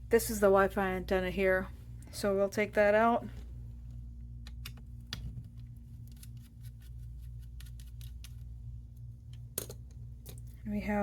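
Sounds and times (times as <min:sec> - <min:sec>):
steady low hum: 0:00.0 - 0:11.0
small laptop parts clicking: 0:07.4 - 0:08.5.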